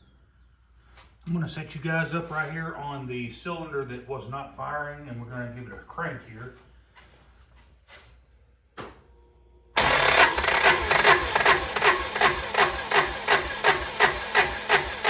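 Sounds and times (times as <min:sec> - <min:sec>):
engine cranking by starter: 0:09.8 - 0:15.0.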